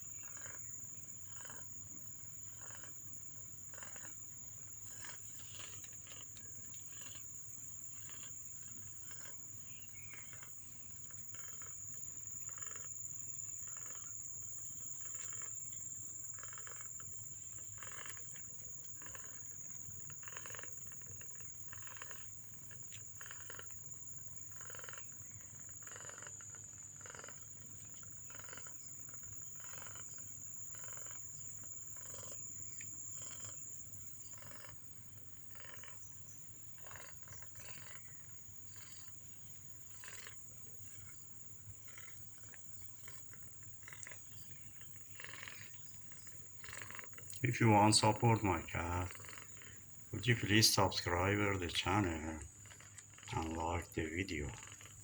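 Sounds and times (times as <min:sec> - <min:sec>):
kittens mewing: 0:41.9 - 0:54.9.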